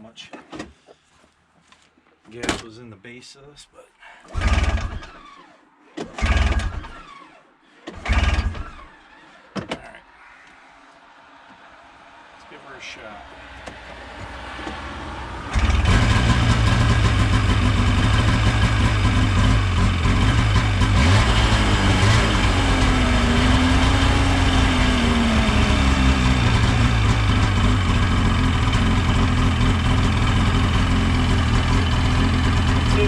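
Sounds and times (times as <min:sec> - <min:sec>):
snowmobile engine starting and idling: 0:04.2 - 0:10.0, 0:13.6 - 0:33.0.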